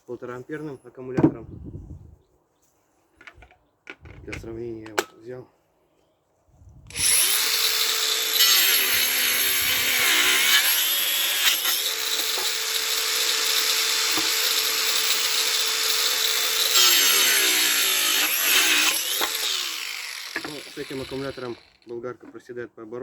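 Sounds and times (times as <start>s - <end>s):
angle grinder cutting wood: 6.9s - 22.0s.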